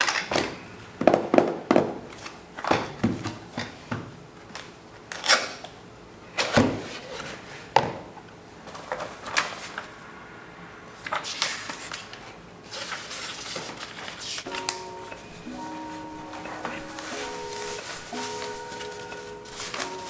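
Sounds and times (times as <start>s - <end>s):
cardboard sliding and rubbing: 12.7s - 20.0s.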